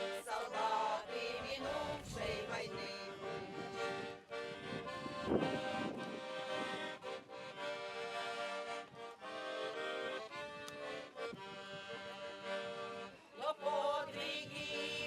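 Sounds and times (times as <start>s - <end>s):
accordion chords: 0.0s - 15.0s.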